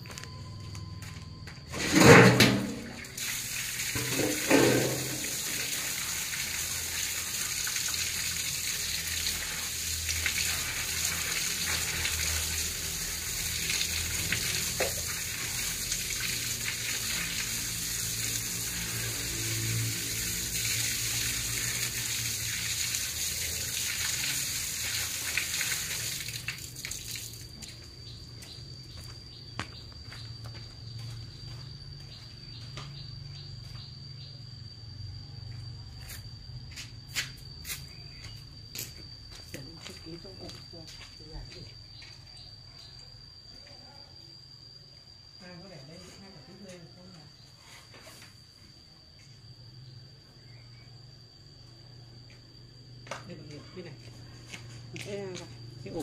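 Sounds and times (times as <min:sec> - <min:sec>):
water running from tap: 0:02.7 - 0:27.5.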